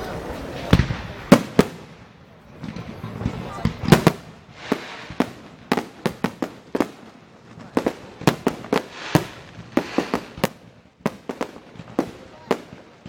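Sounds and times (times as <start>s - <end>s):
fireworks bangs: 0.0s - 13.0s.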